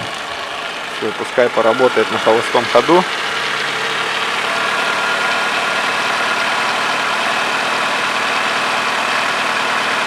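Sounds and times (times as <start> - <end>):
car engine idling: 0.0 - 10.0.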